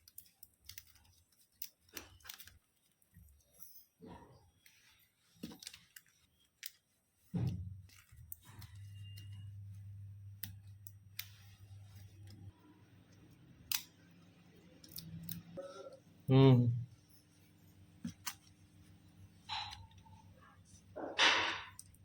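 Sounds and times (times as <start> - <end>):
small parts and tools clicking: 0.0 - 16.0, 19.4 - 22.0
low electrical hum: 5.2 - 22.0.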